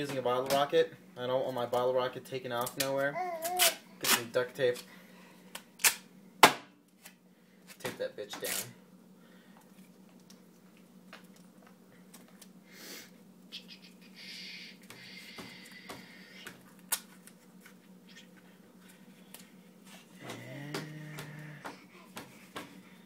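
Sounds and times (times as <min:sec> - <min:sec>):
duct tape ripping off roll: 0:03.4 - 0:04.3.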